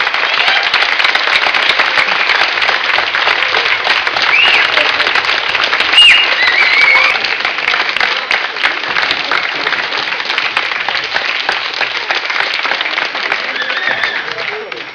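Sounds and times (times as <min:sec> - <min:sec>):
crowd applauding: 0:00.0 - 0:14.9
man whistling: 0:04.3 - 0:04.7, 0:05.9 - 0:07.1.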